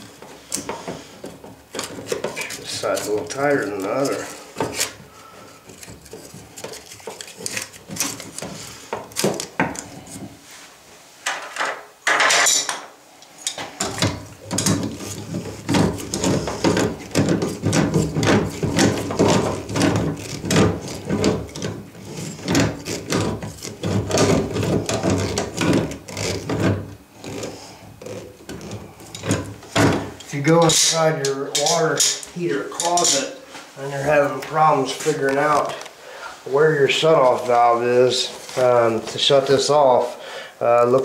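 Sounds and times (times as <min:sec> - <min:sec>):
wrench scraping and clicking on metal: 0:00.2 - 0:05.0, 0:05.6 - 0:10.1, 0:30.2 - 0:33.3.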